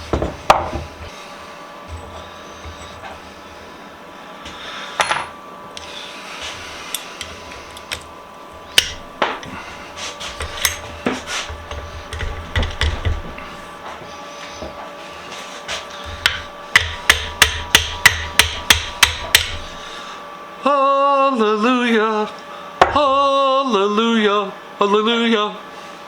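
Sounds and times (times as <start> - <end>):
hammer tapping metal punch: 8.7 - 9.5, 10.4 - 13.5, 16.1 - 19.8.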